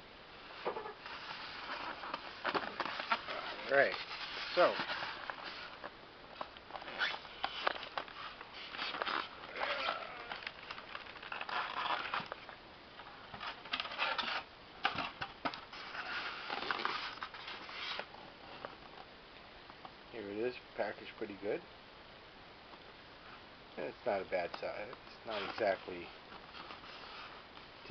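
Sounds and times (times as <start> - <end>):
packaging rustling and crinkling: 0.5 - 19.0, 24.5 - 27.9.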